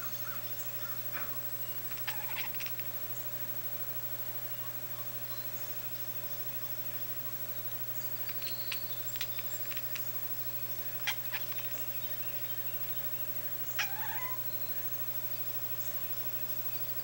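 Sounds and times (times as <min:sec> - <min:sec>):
cat meowing: 0:01.9 - 0:02.8, 0:11.0 - 0:11.7, 0:13.8 - 0:14.4.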